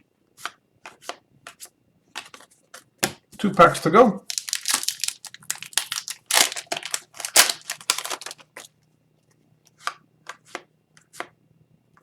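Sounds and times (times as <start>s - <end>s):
cards rustling: 3.6s - 8.7s
foil wrapper crinkling and tearing: 3.7s - 8.7s.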